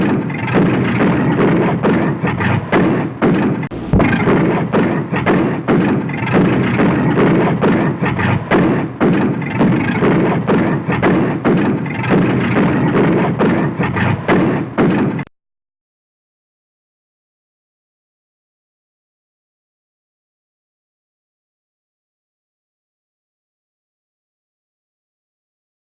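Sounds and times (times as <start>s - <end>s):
exhaust backfiring pops: 0.0s - 15.3s
car engine running hard: 3.7s - 4.6s.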